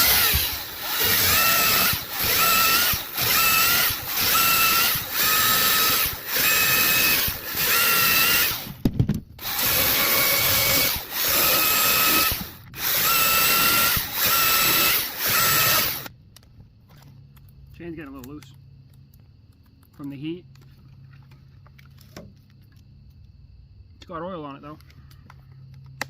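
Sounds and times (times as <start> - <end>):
electric chainsaw cutting log: 0.0 - 8.8, 9.4 - 16.1.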